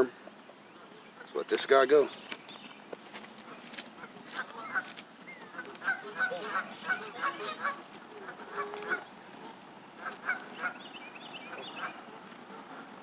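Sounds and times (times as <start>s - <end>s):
geese honking: 3.4s - 13.0s.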